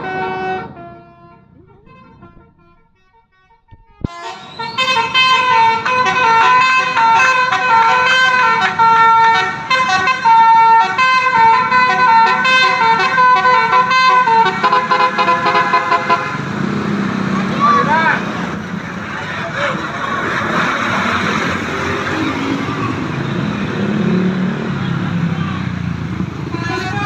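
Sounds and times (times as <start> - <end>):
bus musical horn playing a tune: 0.0 - 16.6, 26.4 - 27.0.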